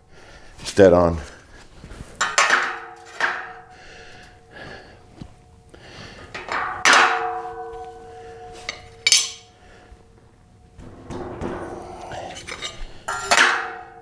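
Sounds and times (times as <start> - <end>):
steel tubing clanking: 1.3 - 14.0
metal tube ringing: 2.2 - 4.4, 5.0 - 14.0.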